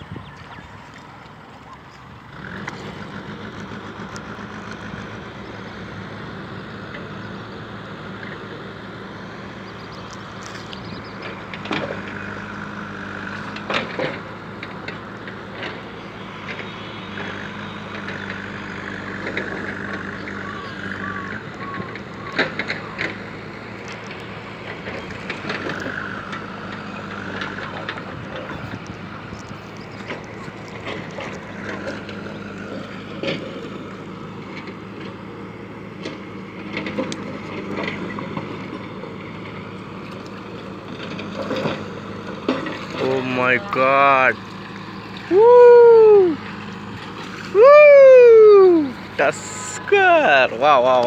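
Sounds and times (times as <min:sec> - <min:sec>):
engine hum: 0:00.0 - 0:51.0.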